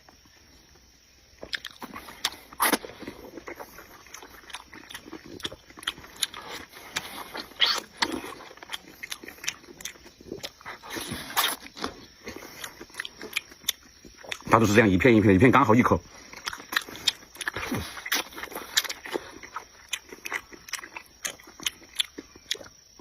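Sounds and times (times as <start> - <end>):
wet chewing and slurping: 1.4 - 14.5, 16.1 - 23.0.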